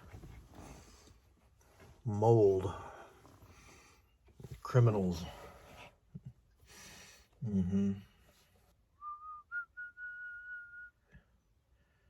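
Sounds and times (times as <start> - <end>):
man grunting: 7.4 - 8.1
man whistling: 9.0 - 11.2.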